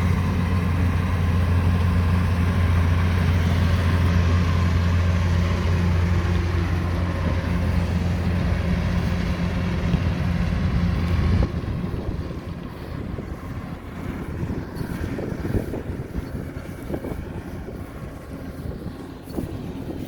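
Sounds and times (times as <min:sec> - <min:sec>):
harvester engine humming: 0:00.0 - 0:20.0.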